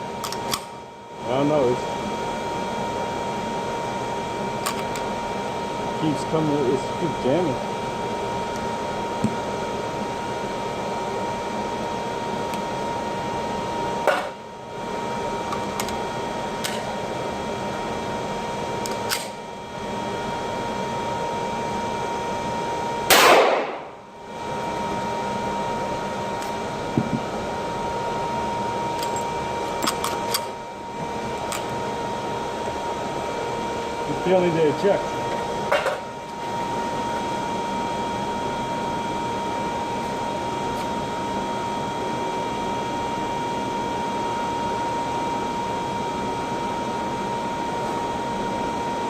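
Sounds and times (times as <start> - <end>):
fan-like hum: 0.0 - 49.0
gunshots: 23.1 - 23.8.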